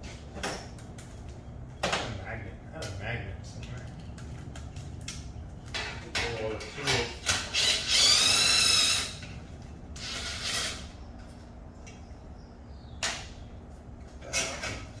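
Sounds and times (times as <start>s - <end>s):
power tool whining: 7.4s - 9.3s.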